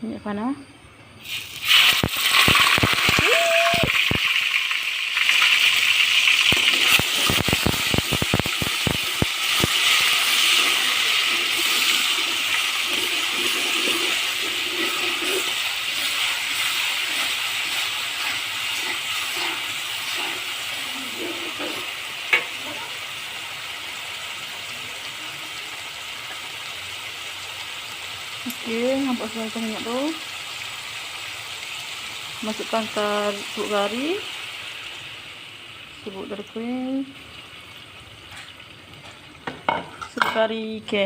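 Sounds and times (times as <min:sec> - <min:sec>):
hot oil sizzling in a pan: 0:01.2 - 0:41.0
sharp crackles: 0:01.3 - 0:04.4, 0:05.2 - 0:20.4.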